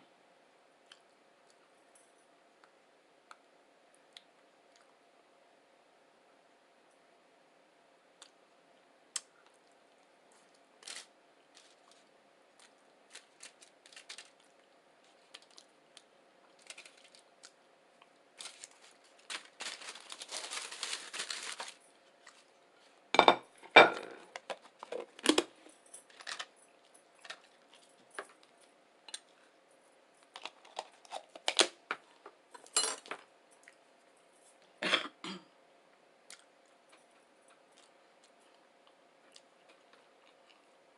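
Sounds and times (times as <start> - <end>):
faint steady hum: 0.0 - 40.9
rustling: 10.3 - 15.7, 18.4 - 23.0.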